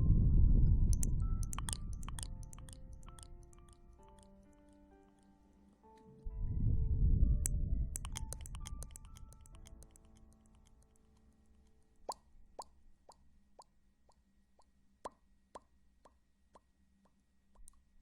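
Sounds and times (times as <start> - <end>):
low whooshing rumble: 0.0 - 2.0, 6.3 - 8.0
soft ethereal notes: 0.0 - 12.0
soft echoing plops: 0.9 - 4.7, 7.9 - 11.0.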